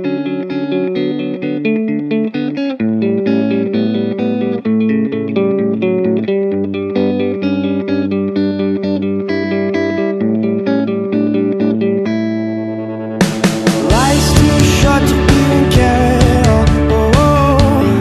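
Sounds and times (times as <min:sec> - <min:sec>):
guitar picking quick notes: 0:00.0 - 0:18.0
bass line: 0:12.0 - 0:18.0.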